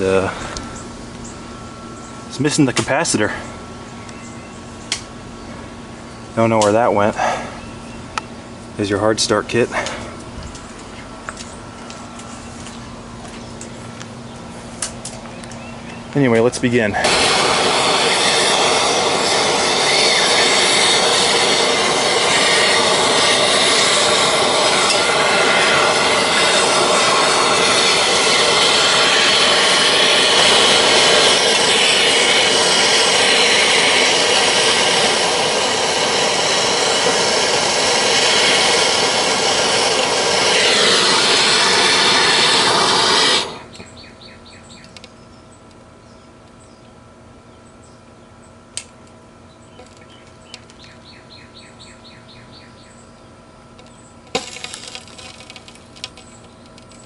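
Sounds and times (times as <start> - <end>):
power tool motor running: 17.0 - 43.7, 54.3 - 56.4.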